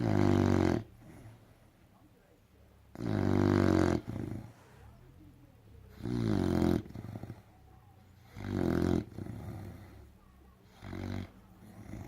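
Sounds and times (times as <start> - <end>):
dog snoring loudly: 0.0 - 1.3, 2.9 - 4.5, 5.9 - 7.4, 8.2 - 10.0, 10.7 - 12.0.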